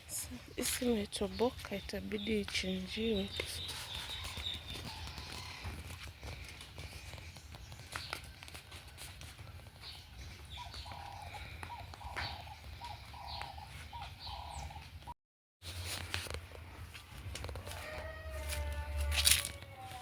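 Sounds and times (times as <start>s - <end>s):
birds chirping and calling: 0.0s - 15.1s.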